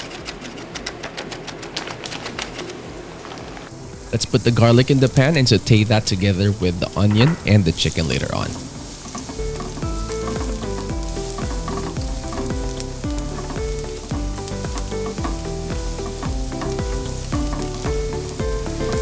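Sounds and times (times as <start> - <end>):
garlic sizzling in oil: 2.0 - 19.0
background music with a beat: 8.6 - 19.0.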